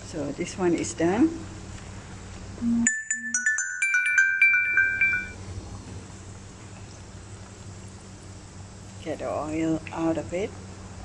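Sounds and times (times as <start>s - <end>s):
bright chime jingle: 2.9s - 5.4s.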